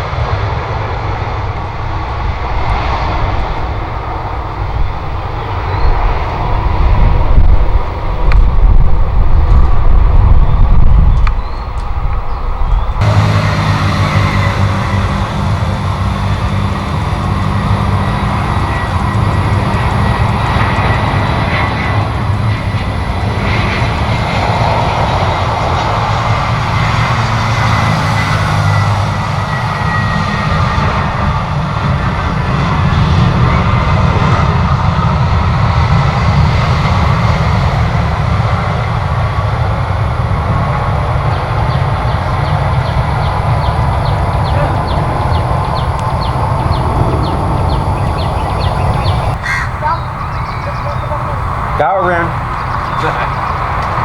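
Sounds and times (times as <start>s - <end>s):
jet engines rumbling: 0.0s - 54.0s
faint high whine: 12.6s - 33.8s, 35.9s - 54.0s.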